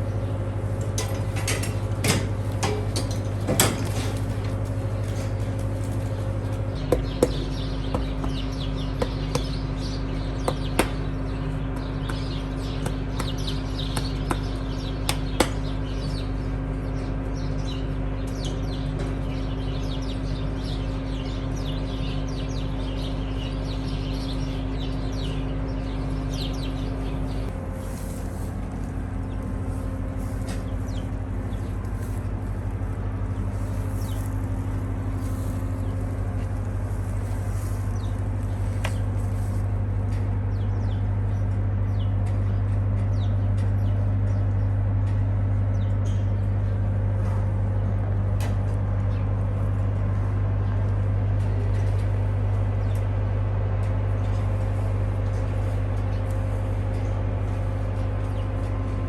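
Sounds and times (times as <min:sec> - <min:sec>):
small birds chirping: 0:00.0 - 0:48.1, 0:48.7 - 0:59.0
machine hum: 0:00.0 - 0:59.0.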